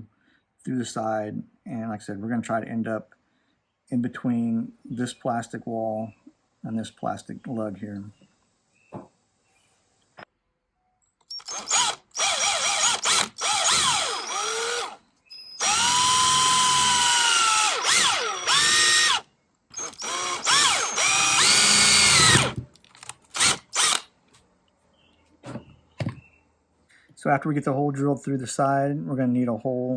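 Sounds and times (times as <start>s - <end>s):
electric drill boring: 11.3s - 15.0s, 15.6s - 24.1s.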